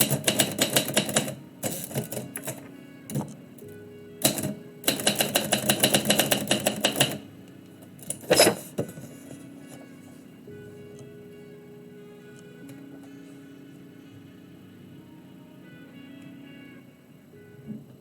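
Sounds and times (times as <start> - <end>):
typewriter keystrokes: 0.0 - 3.3, 4.2 - 7.2
typewriter heavy clunk: 0.0 - 3.4, 4.2 - 7.3.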